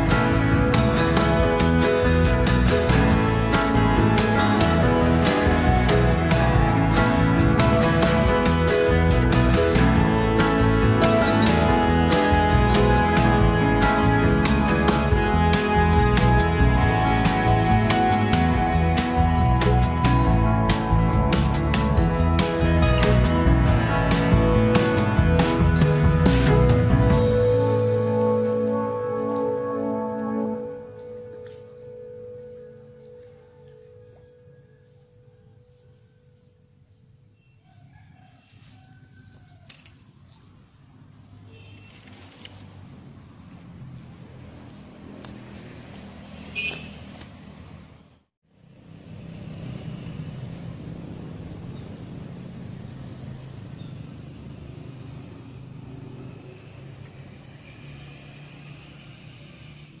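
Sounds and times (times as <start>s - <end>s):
held ringing music tone: 25.0s - 36.8s.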